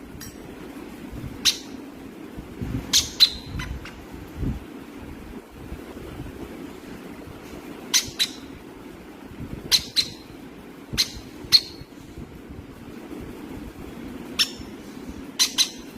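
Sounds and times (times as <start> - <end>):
low steady hum: 0.0 - 15.9
parrot squawking: 2.9 - 4.0, 8.0 - 8.5, 9.7 - 10.3, 15.4 - 15.9.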